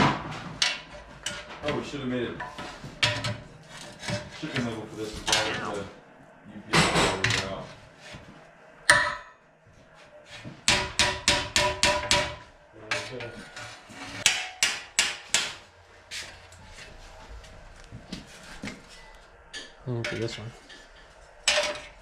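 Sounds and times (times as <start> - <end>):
hammer striking steel: 14.2 - 15.6.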